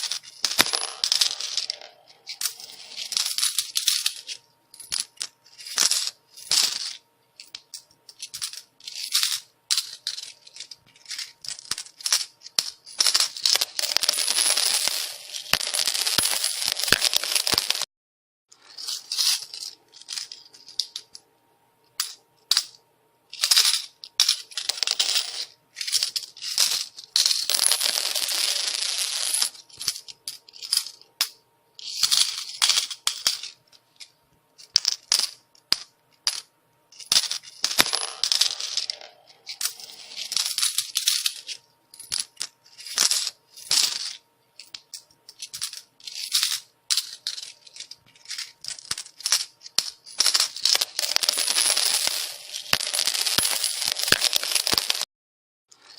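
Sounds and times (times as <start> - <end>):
coins falling and clinking: 0.0 - 17.9, 18.6 - 21.2, 22.0 - 55.1.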